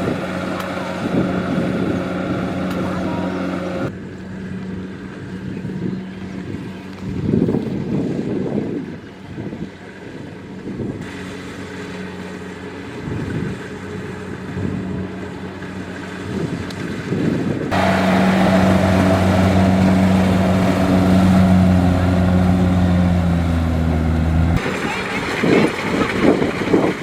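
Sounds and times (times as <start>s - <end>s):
diesel engine running: 0.0s - 7.0s, 17.6s - 25.3s.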